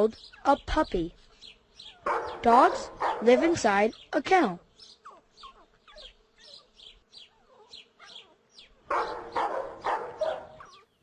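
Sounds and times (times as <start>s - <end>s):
dog barking loudly: 2.0s - 3.6s, 8.9s - 10.8s
dog yipping and whimpering: 5.0s - 11.0s.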